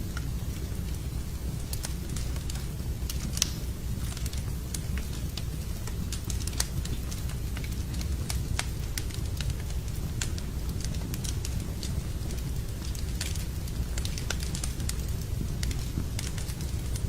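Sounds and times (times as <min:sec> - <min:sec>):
low fire rumble: 0:00.0 - 0:17.0
wood fire crackling: 0:00.0 - 0:17.0.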